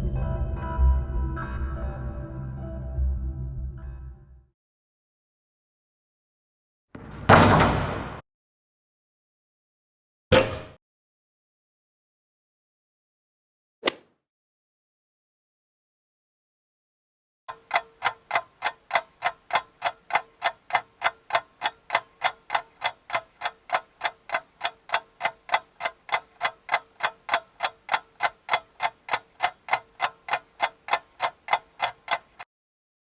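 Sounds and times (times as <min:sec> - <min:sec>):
clock ticking: 0:17.5 - 0:32.5.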